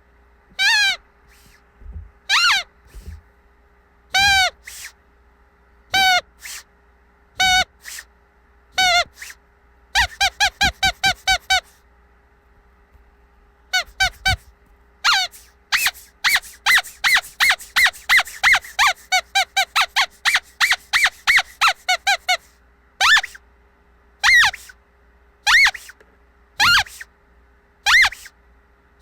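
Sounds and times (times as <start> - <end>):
squeaky dog toy squeaking: 0.5 - 1.6, 2.3 - 3.2, 4.1 - 5.0, 5.9 - 6.6, 7.4 - 8.1, 8.8 - 9.4, 10.0 - 11.8, 13.7 - 23.4, 24.2 - 24.8, 25.4 - 26.0, 26.6 - 27.1, 27.8 - 28.3.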